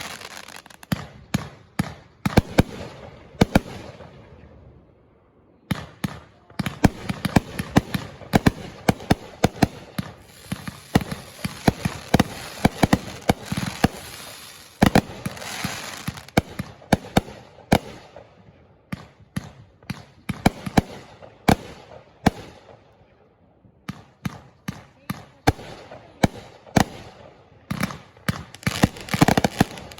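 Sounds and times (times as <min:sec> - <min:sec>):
fireworks bangs and crackling: 0:00.0 - 0:04.5, 0:05.7 - 0:22.8, 0:23.8 - 0:29.9.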